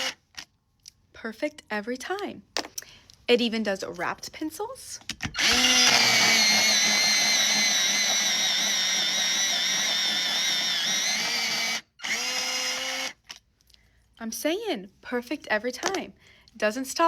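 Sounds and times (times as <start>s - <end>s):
electric pencil sharpener whine: 5.4s - 13.2s.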